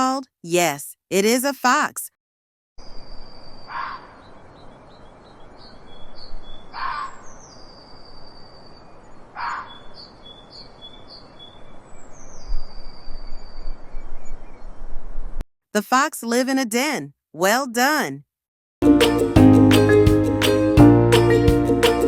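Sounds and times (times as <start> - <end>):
birds singing whistled notes: 2.8 - 15.0
short downward bird calls: 3.6 - 4.3, 6.0 - 7.7, 9.3 - 11.6.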